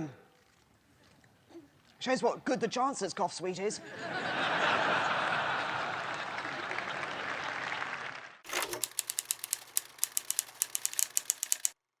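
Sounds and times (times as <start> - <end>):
audience applause: 5.1 - 8.5
sharp irregular clicks: 8.5 - 11.8.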